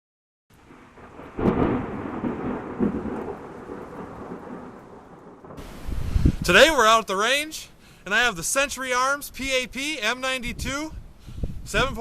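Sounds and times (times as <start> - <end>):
thunder crack and rumble: 0.6 - 6.5.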